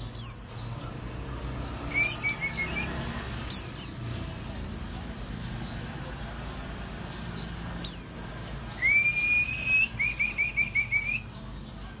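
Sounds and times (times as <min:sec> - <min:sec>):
bird whistling song: 0:00.1 - 0:00.6, 0:01.8 - 0:04.0, 0:07.2 - 0:08.1, 0:08.7 - 0:11.3.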